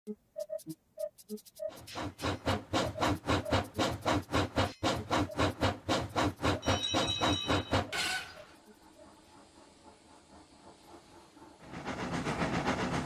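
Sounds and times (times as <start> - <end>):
steam locomotive chuffing: 1.6 - 13.0
faint steam hiss: 8.3 - 13.0.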